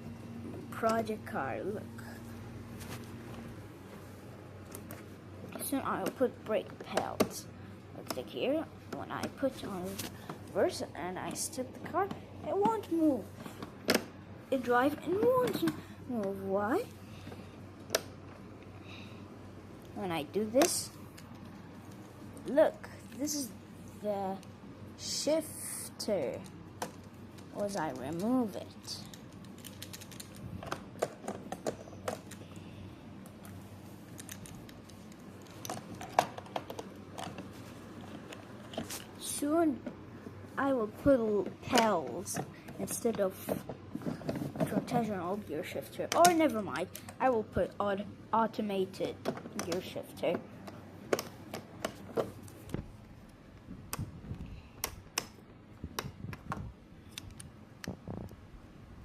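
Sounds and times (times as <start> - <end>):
small parts clicking and tapping: 26.3 - 32.6, 33.2 - 39.0.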